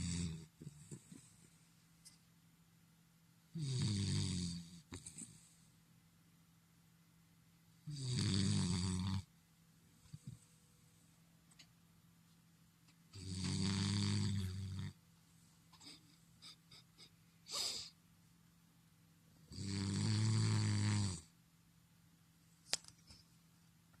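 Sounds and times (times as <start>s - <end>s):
dog snoring: 0.0s - 1.4s, 3.5s - 5.6s, 7.8s - 9.3s, 13.2s - 15.0s, 19.4s - 21.3s
breathy puff: 17.5s - 18.0s.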